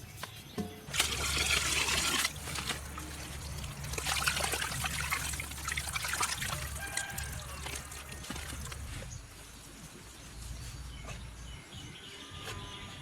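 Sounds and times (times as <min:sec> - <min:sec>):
water trickling and pouring: 0:00.9 - 0:09.0.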